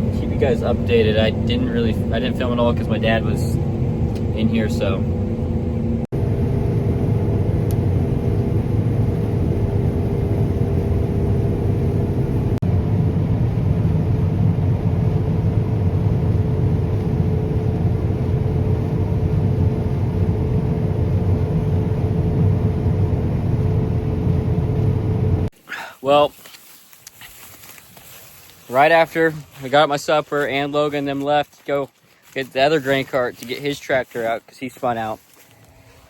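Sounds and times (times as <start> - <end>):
steady machine hum: 0.0 - 25.5
farm machine rumbling: 0.0 - 36.0.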